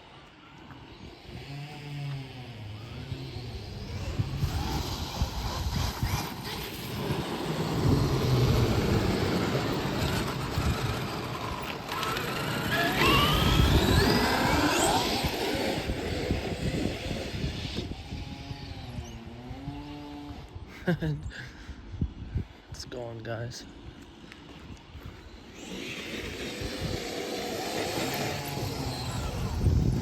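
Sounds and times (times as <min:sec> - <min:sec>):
electric motor whining: 0:00.0 - 0:20.7, 0:24.8 - 0:30.0
low rumble of tyres: 0:00.1 - 0:21.0.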